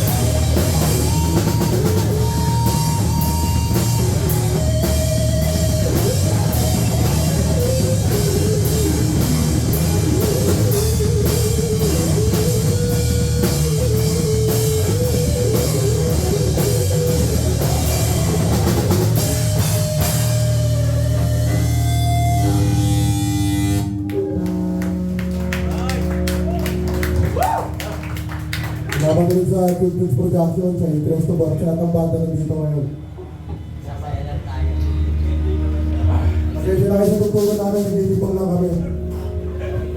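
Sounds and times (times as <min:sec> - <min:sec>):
fast drums: 0:00.0 - 0:22.2, 0:36.7 - 0:38.8
held guitar notes ringing: 0:00.0 - 0:26.9
distorted guitars: 0:00.0 - 0:39.9.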